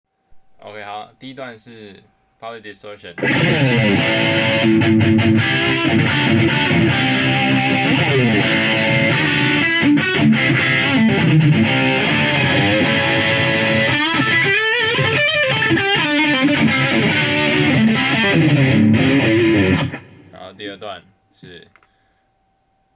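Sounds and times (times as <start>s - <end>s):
distorted electric guitar: 3.2s - 20.4s.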